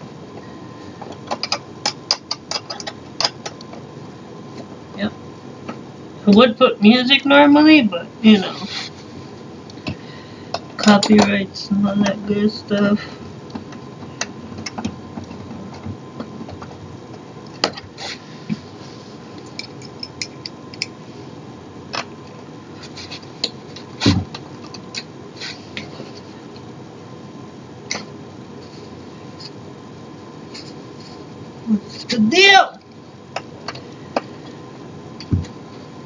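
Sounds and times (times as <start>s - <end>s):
parts clicking and knocking: 1.0s - 3.8s.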